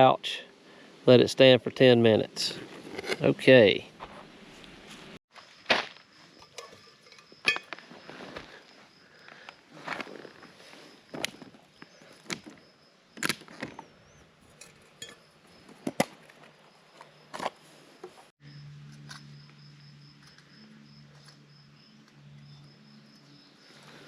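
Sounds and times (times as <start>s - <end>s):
high insect trill: 5.3s - 17.8s, 18.4s - 24.0s
camp cooking gear clattering: 6.3s - 8.2s, 13.2s - 16.6s.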